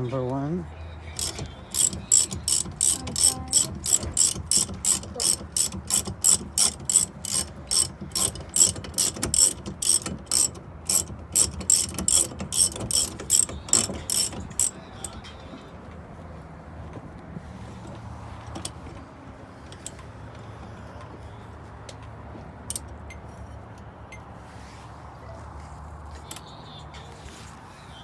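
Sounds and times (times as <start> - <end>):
ratchet wrench clicking: 1.2 - 15.3.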